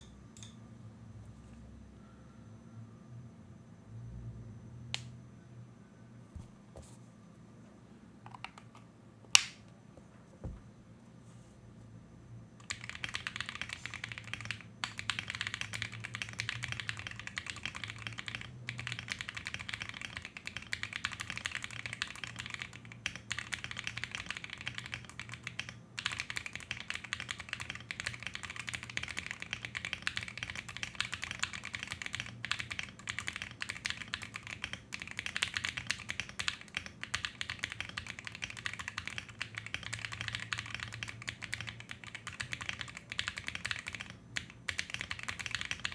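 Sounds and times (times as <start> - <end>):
mechanical keyboard typing: 12.6 - 45.9.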